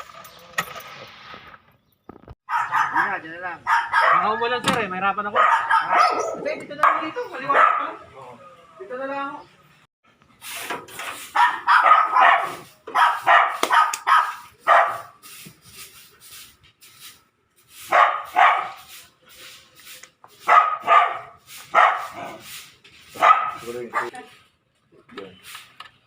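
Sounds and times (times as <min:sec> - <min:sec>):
dog barking: 0:02.5 - 0:04.6, 0:05.3 - 0:08.0, 0:11.3 - 0:15.1, 0:17.9 - 0:18.8, 0:20.4 - 0:22.4, 0:23.1 - 0:24.2.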